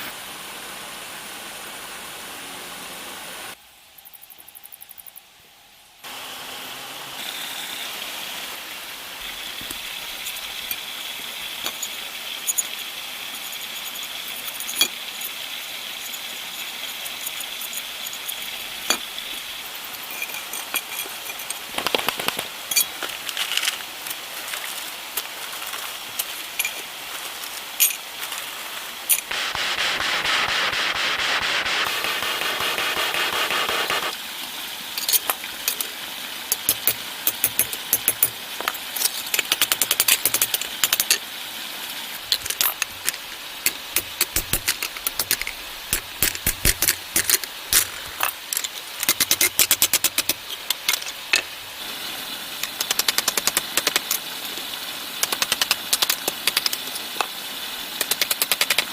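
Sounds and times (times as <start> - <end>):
steady rushing noise: 28.6 - 34.2
sharp hammer strikes: 29.3 - 34.1.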